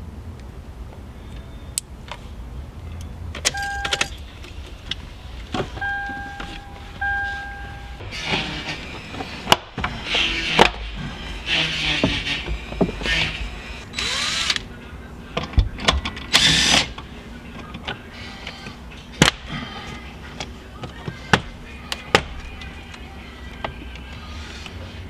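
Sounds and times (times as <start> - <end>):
low hum: 0.0 - 20.8
electronic beeps: 3.5 - 4.2, 5.8 - 9.5.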